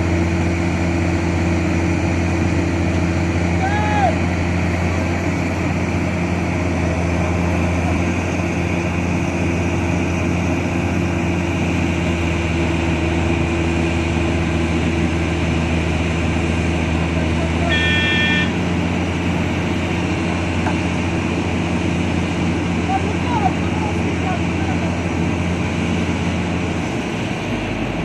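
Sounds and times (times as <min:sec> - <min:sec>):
truck engine humming: 0:00.0 - 0:28.0
truck horn blast: 0:17.5 - 0:18.7.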